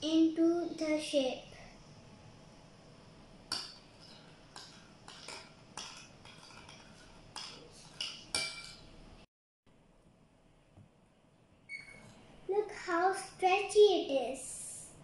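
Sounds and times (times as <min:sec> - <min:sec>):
spoon clinking against a bowl: 0:03.5 - 0:08.9.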